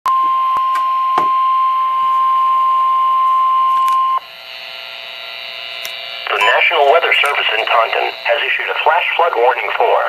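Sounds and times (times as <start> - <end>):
steady alarm beep: 0.1 - 5.2, 6.3 - 9.3
radio static: 5.6 - 10.0.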